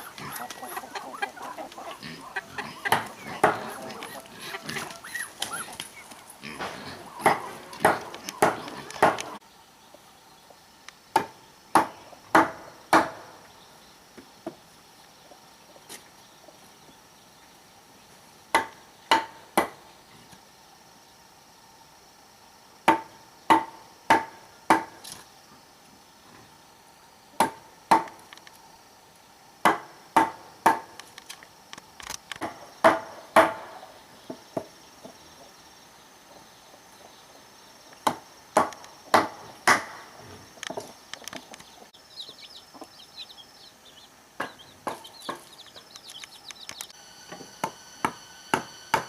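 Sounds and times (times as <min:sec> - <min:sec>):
hand tool striking wood: 0:02.9 - 0:03.8, 0:06.6 - 0:09.4, 0:11.2 - 0:13.2, 0:27.4 - 0:28.2, 0:29.6 - 0:30.9, 0:32.4 - 0:33.8, 0:38.0 - 0:40.0, 0:47.3 - 0:49.0.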